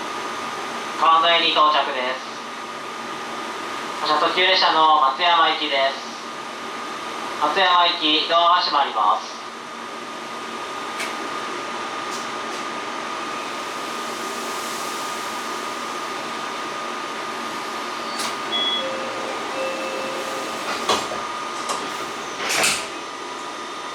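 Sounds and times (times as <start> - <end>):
train car hum: 0.0 - 23.9
thin high tone: 18.0 - 20.8.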